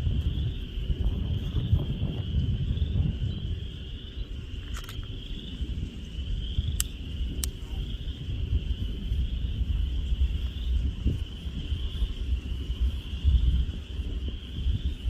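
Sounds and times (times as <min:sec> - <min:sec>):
sharp clicks: 0:06.7 - 0:07.6.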